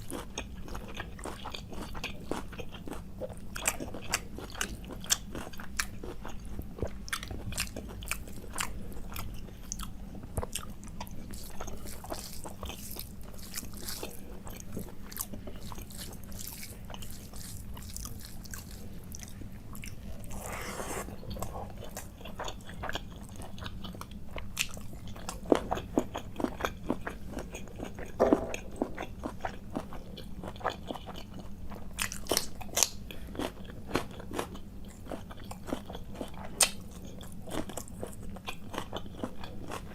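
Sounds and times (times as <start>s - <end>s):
person chewing: 0.0s - 39.9s
noisy breath or slurp: 20.2s - 21.8s.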